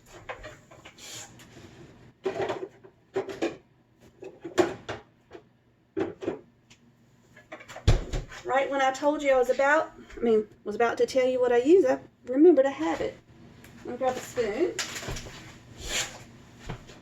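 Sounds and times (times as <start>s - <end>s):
cupboard knocks and clatters: 7.6s - 8.4s.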